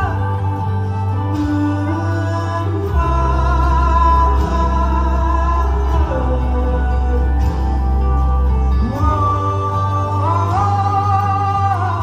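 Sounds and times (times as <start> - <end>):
live pop music: 0.0 - 12.0.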